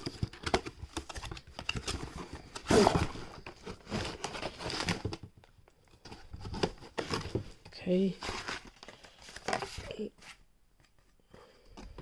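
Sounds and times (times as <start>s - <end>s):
packaging rustles and clicks: 0.0s - 7.6s.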